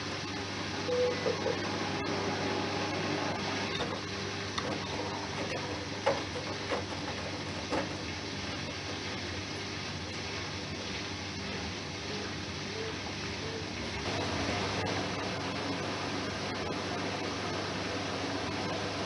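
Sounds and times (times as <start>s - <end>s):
washing machine motor hum: 0.0s - 19.0s.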